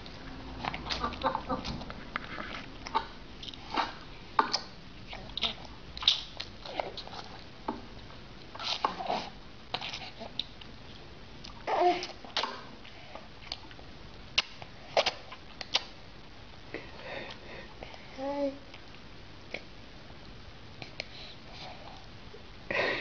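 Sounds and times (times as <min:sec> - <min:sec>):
baby mouth clicks and smacks: 0:05.4 - 0:06.5, 0:14.4 - 0:15.9
baby babbling: 0:11.7 - 0:12.2.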